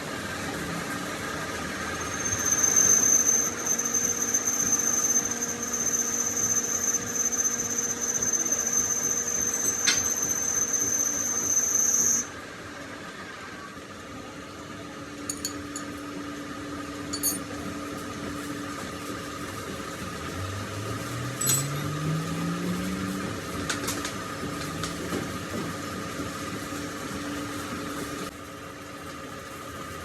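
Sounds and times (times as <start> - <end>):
workshop machinery humming: 0.0 - 30.0
light metallic clinks: 17.1 - 17.6, 21.4 - 22.0
motor tone rising in pitch: 20.3 - 23.5.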